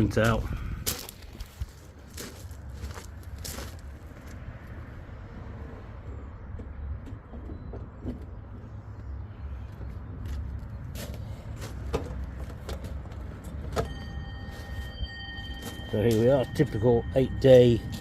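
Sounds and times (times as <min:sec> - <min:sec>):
knocks and clunks of handling: 0:11.6 - 0:14.0.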